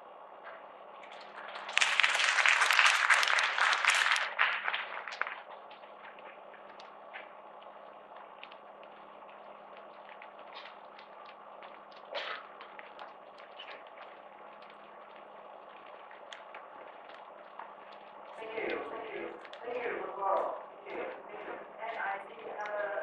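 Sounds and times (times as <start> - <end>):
audience applauding: 1.1 - 6.1.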